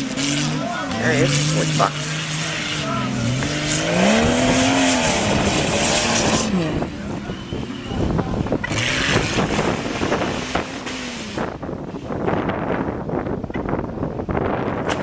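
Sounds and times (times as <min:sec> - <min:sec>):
engine revving hard: 0:00.0 - 0:07.0, 0:08.5 - 0:11.6.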